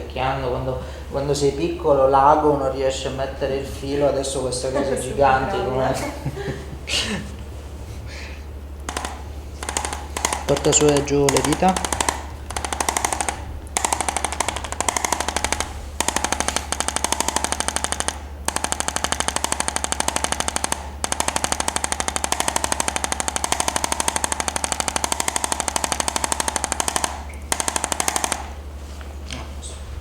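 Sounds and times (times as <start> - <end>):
percussion massager hammering: 8.8 - 28.8.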